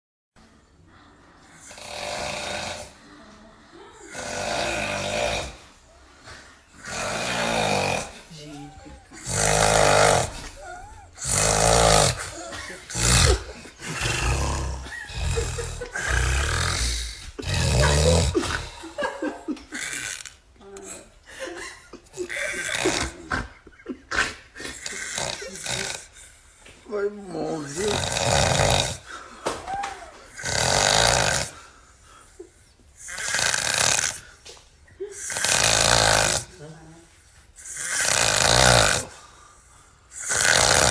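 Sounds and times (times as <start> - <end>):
quiet breathing: 0.4 - 11.4, 39.0 - 40.2
person snoring: 1.4 - 21.1, 22.1 - 26.4, 27.0 - 29.4, 30.3 - 34.4, 35.0 - 37.0, 37.6 - 40.9.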